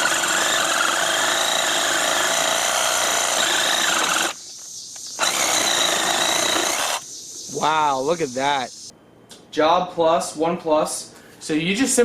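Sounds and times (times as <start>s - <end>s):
power tool motor whining: 0.0s - 7.0s.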